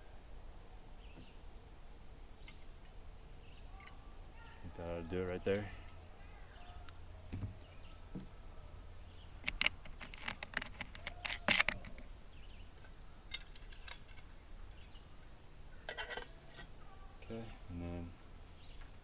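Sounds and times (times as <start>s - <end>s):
metal cookware clinking: 15.9s - 16.7s.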